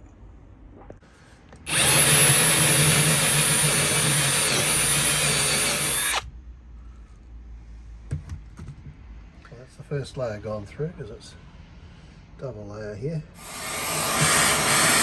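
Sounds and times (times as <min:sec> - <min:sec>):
power drill whining: 0:01.7 - 0:06.3, 0:13.4 - 0:15.0.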